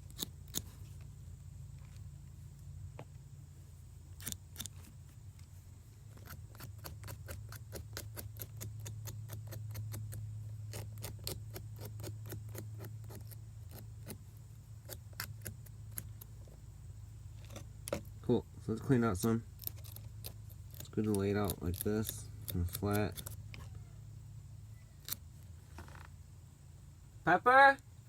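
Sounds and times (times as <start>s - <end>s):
razor blade scraping wire: 0.0s - 0.9s, 4.2s - 4.9s, 6.1s - 16.3s, 19.6s - 23.7s, 25.0s - 25.2s.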